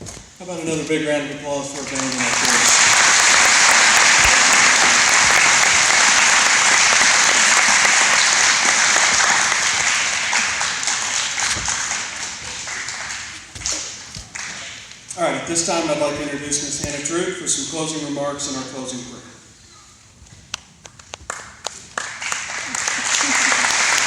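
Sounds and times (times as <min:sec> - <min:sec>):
large audience applauding: 0:01.8 - 0:13.5, 0:21.3 - 0:24.0.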